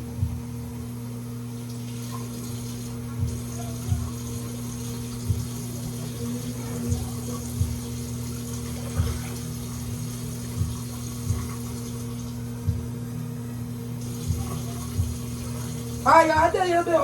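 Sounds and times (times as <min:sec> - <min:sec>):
steady hum: 0:00.0 - 0:17.0
background music: 0:02.5 - 0:17.0
low irregular thump: 0:12.6 - 0:13.0
tap running water into cup: 0:14.0 - 0:16.1.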